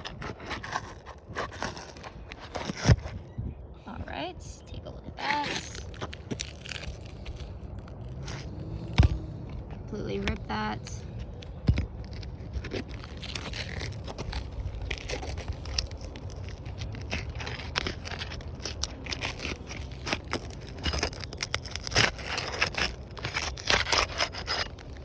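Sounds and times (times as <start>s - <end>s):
adhesive strips crackling: 0.0s - 3.2s, 5.2s - 25.0s
steady low rumble: 2.2s - 25.0s
metal bar scraping shingles: 12.1s - 25.0s.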